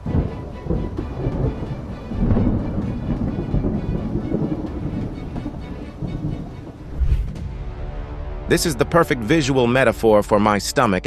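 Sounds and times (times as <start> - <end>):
thunder rumbling: 0.0 - 8.6.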